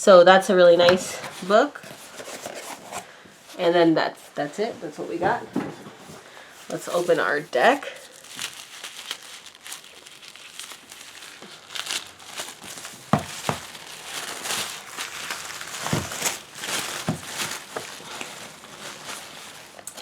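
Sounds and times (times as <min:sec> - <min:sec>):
packaging crinkling: 0:06.6 - 0:20.0.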